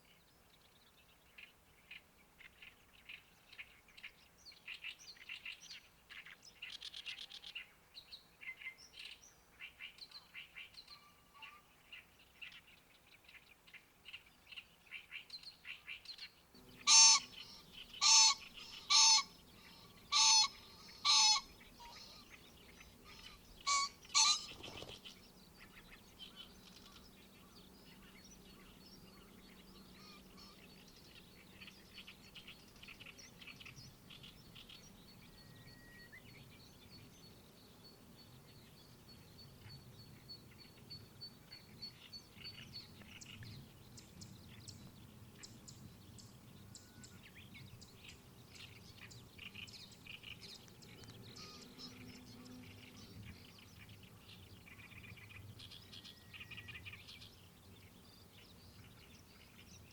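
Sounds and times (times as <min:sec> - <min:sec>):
birds calling harshly: 0:16.6 - 0:28.8, 0:48.6 - 0:55.2
birds chirping: 0:16.6 - 0:59.9.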